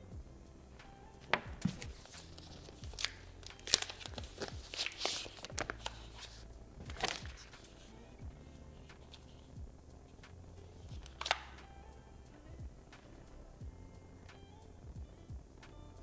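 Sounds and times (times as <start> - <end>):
paper rustling: 1.2 - 7.9, 10.8 - 11.6.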